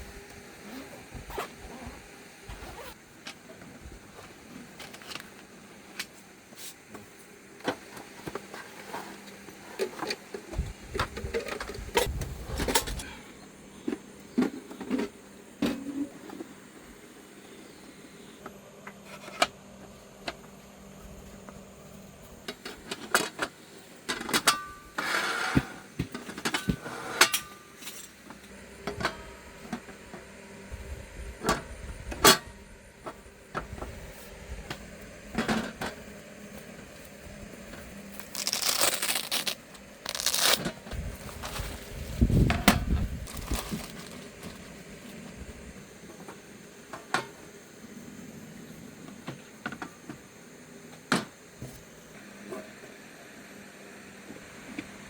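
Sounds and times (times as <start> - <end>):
scraping rustles: 37.7 - 44.8
objects clicking and clattering: 42.5 - 44.7.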